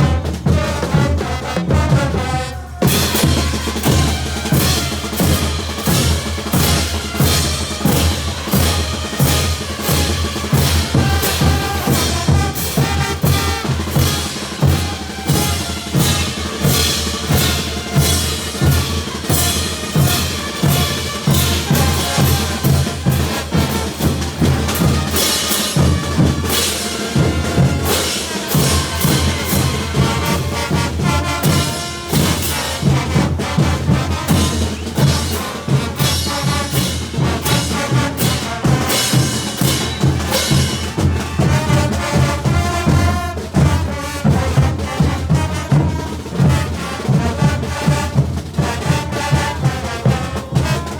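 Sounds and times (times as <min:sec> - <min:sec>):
brass band playing: 0:00.0 - 0:50.9.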